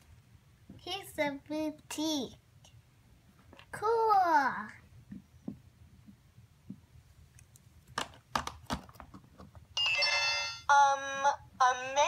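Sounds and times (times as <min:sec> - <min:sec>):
electronic chime: 0:09.8 - 0:10.7
toy's recorded voice: 0:10.7 - 0:12.0.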